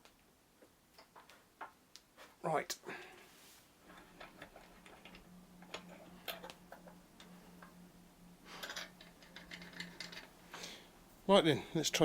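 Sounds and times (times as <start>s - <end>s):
steady low hum: 2.8s - 12.0s.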